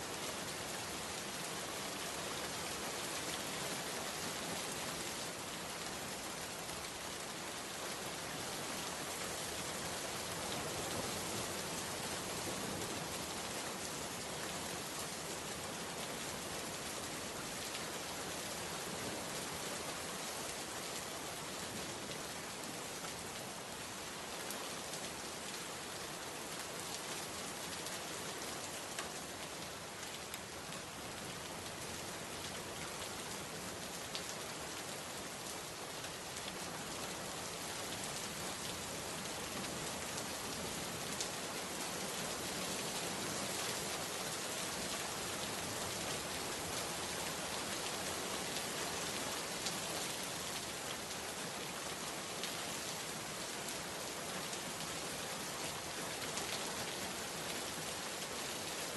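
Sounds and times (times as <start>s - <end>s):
steady rain falling: 0.0s - 58.9s.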